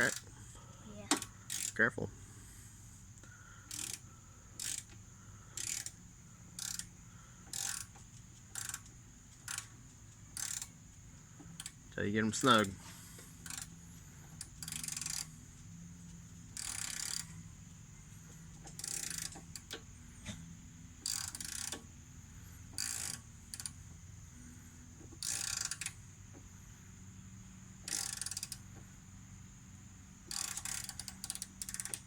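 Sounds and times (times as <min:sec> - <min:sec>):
ratchet wrench clicking: 0:01.1 - 0:01.8, 0:03.6 - 0:17.5, 0:18.2 - 0:20.0, 0:21.0 - 0:21.9, 0:22.7 - 0:23.9, 0:25.0 - 0:26.1, 0:27.8 - 0:28.9, 0:30.2 - 0:32.0.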